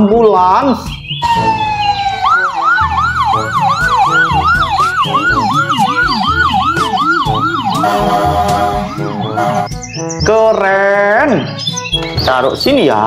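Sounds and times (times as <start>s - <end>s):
electronic ambulance siren wailing: 1.2s - 9.8s.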